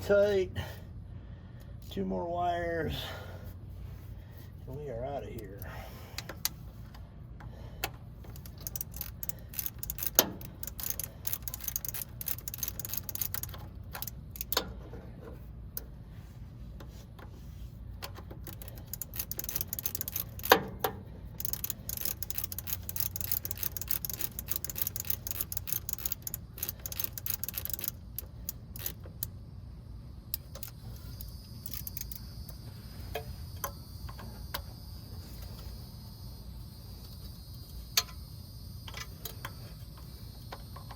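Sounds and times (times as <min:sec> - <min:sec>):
crickets chirping: 0:07.5 - 0:16.0, 0:18.2 - 0:40.9
ratchet wrench clicking: 0:07.8 - 0:14.9, 0:18.0 - 0:29.4, 0:30.2 - 0:35.8, 0:37.0 - 0:40.9.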